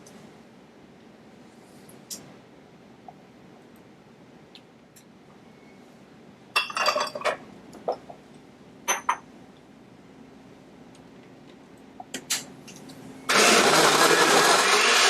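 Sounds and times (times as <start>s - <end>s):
glass clinking: 6.6s - 8.0s, 8.9s - 9.2s.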